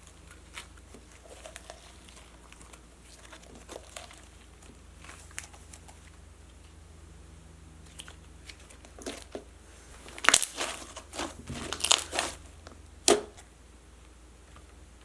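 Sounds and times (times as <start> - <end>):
slime squishing with sticky pops: 10.1 - 13.4.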